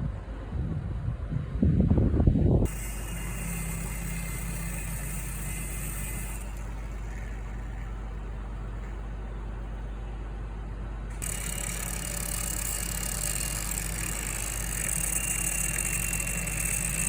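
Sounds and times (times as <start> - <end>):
faint high whine: 2.6 - 10.0.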